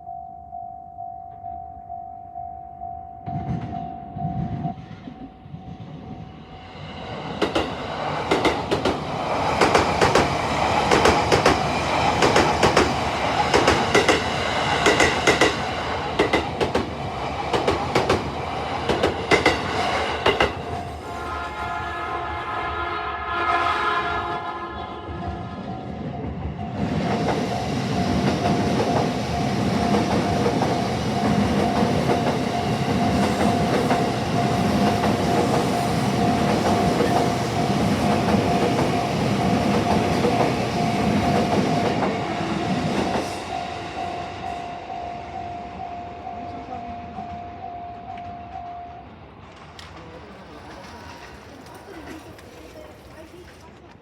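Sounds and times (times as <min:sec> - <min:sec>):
crossing warning bell ringing: 0:00.0 - 0:06.6, 0:25.2 - 0:49.4
train wheels clattering over rails: 0:03.3 - 0:21.1, 0:26.5 - 0:44.6, 0:49.4 - 0:54.0
train horn: 0:21.1 - 0:25.8.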